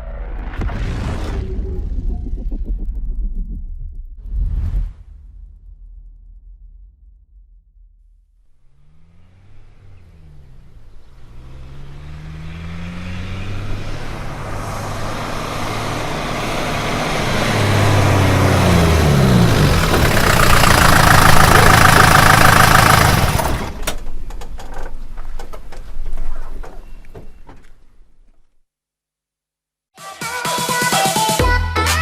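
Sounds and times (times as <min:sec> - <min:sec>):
bus engine: 0:08.6 - 0:28.5.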